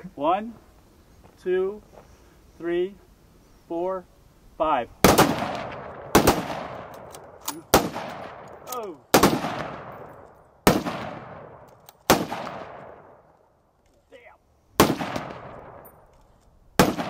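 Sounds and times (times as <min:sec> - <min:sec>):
echo rolling across open ground: 0:00.0 - 0:17.0
gunshots: 0:05.0 - 0:08.5, 0:09.1 - 0:13.2, 0:14.8 - 0:15.9, 0:16.8 - 0:17.0.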